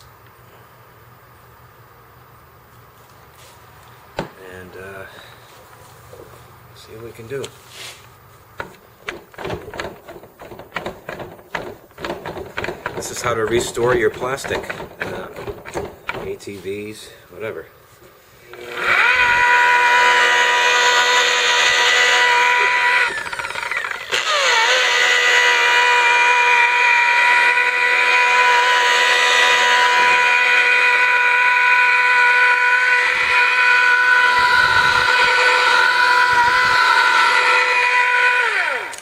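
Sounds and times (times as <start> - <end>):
polisher motor whining: 18.5 - 39.0.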